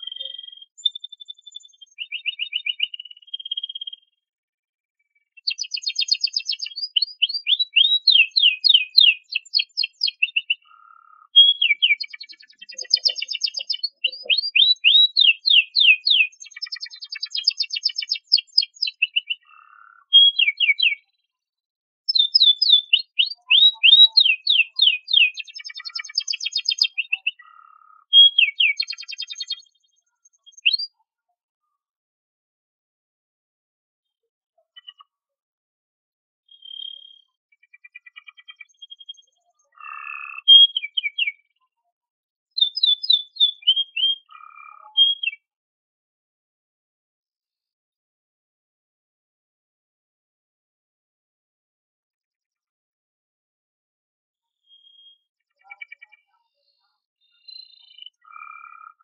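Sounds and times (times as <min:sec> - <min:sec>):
canary singing trills: 0:00.0 - 0:04.1, 0:05.2 - 0:21.2, 0:22.1 - 0:31.1, 0:36.5 - 0:41.6, 0:42.5 - 0:45.5, 0:54.5 - 0:59.0.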